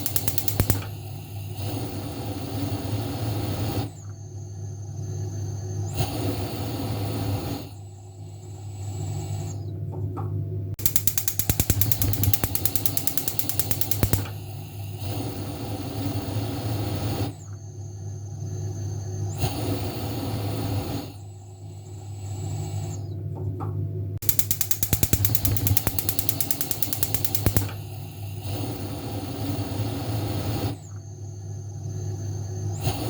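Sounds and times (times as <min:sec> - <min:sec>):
stove igniter clicks: 0:00.0 - 0:02.0, 0:10.8 - 0:15.2, 0:24.2 - 0:29.1
gas hiss: 0:00.0 - 0:04.1, 0:04.9 - 0:09.5, 0:10.8 - 0:17.5, 0:18.4 - 0:22.9, 0:24.2 - 0:31.0.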